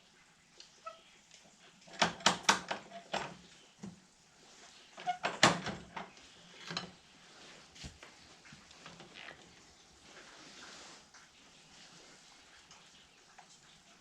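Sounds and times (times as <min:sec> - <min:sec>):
metal clicks and clanks: 0:01.9 - 0:03.4.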